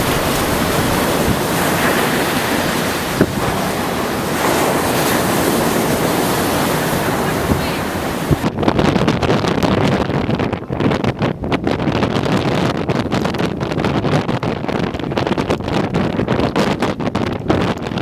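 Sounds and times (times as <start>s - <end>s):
heavy surf rushing: 0.0s - 8.6s
storm wind on microphone: 0.0s - 18.0s.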